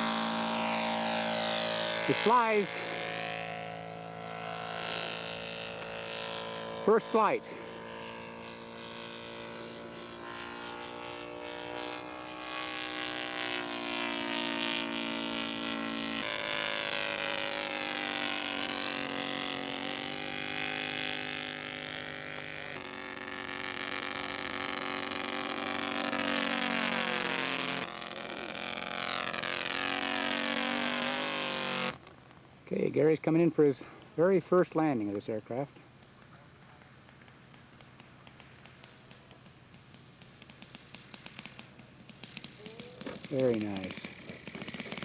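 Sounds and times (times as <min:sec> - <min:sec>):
model airplane engine in flight: 0:00.0 - 0:45.0.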